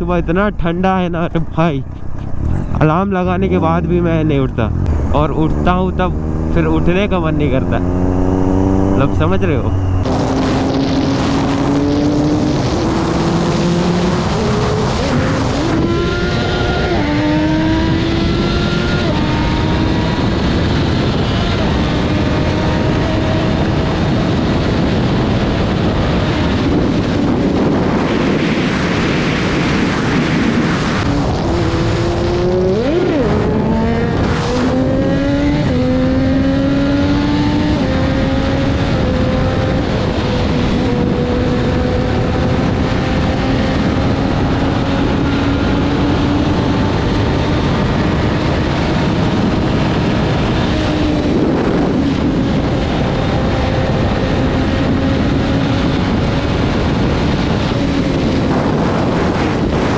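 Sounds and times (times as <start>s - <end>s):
wind noise: 0.0s - 59.9s
motorcycle engine shifting gears: 1.2s - 59.9s.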